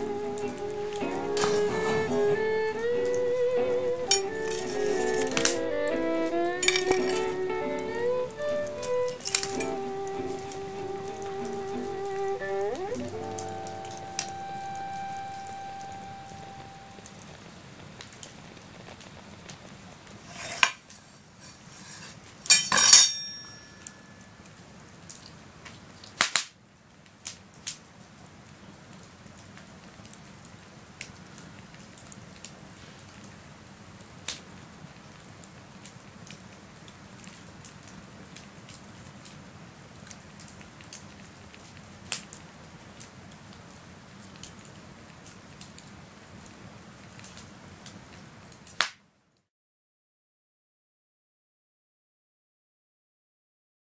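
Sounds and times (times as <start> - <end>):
campfire crackling and popping: 0.0 - 22.6, 24.4 - 49.0
sharp clatters of handled objects: 6.6 - 7.3, 21.8 - 23.8.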